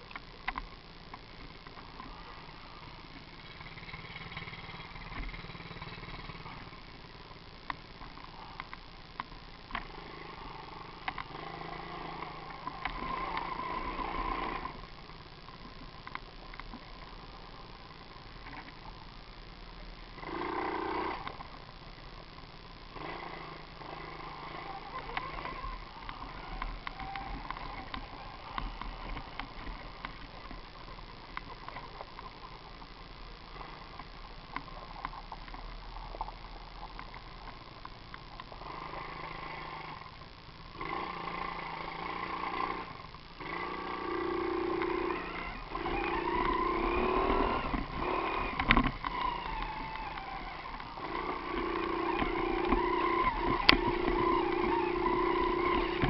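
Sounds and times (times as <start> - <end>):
mini motorbike engine revving: 2.1 - 6.8, 9.8 - 14.8, 20.2 - 21.3, 22.9 - 29.8, 38.6 - 40.0, 40.8 - 56.0.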